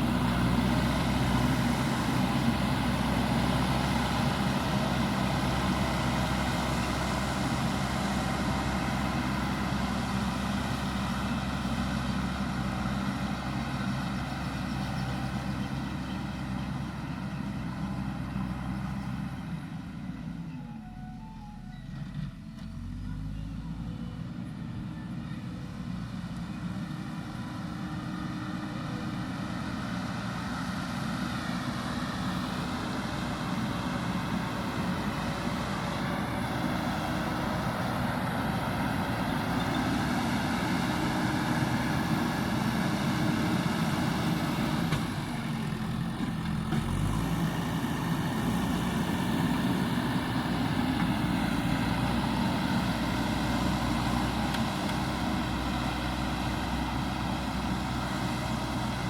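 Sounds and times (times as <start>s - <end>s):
diesel engine running under work: 0.0s - 59.0s.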